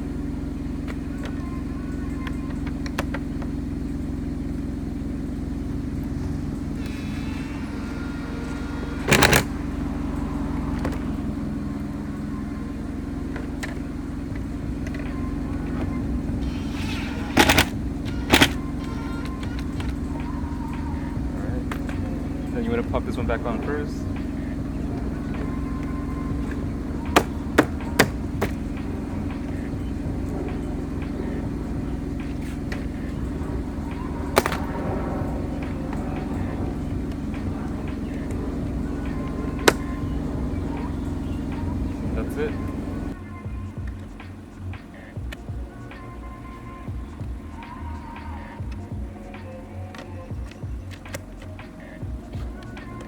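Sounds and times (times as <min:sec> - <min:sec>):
steady low hum: 0:00.0 - 0:53.0
parts and tools clattering: 0:08.5 - 0:09.7, 0:13.2 - 0:20.1, 0:26.4 - 0:33.7, 0:34.3 - 0:34.9.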